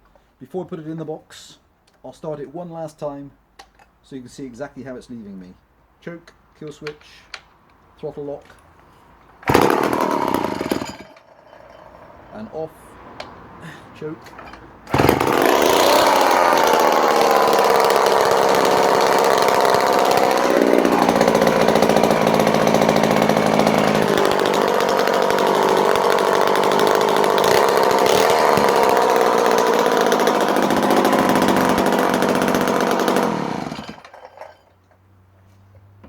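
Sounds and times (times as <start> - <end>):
chainsaw engine running: 9.4 - 12.1, 14.9 - 34.5.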